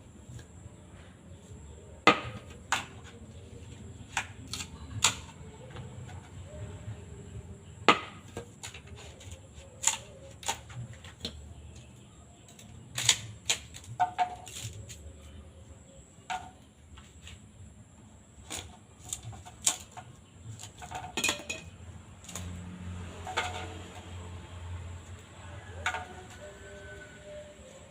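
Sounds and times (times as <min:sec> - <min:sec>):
bamboo knocking and cracking: 0:02.0 - 0:06.2, 0:07.8 - 0:11.9, 0:12.5 - 0:15.1, 0:16.2 - 0:16.6, 0:18.4 - 0:24.1.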